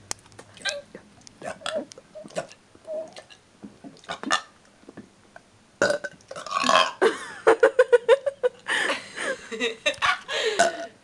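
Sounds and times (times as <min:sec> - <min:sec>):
person burping loudly: 0:05.8 - 0:07.0, 0:10.5 - 0:11.0.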